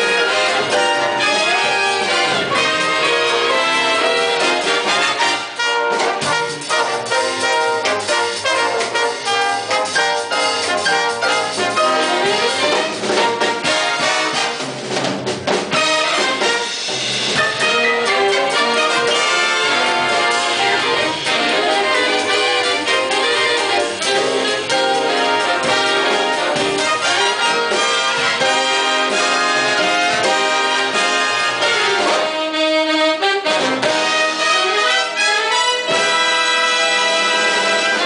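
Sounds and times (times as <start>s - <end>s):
jazz band playing swing: 0.0s - 38.0s.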